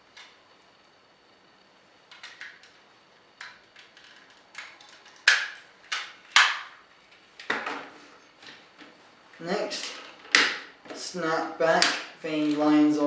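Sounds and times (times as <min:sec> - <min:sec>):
plastic parts snapping into place: 0:03.4 - 0:06.7
plastic toy parts clicking: 0:03.4 - 0:06.7.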